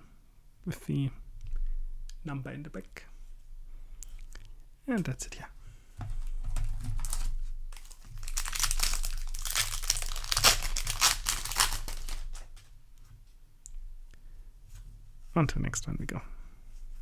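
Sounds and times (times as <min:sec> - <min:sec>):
foil wrapper crinkling and tearing: 0:06.9 - 0:12.5.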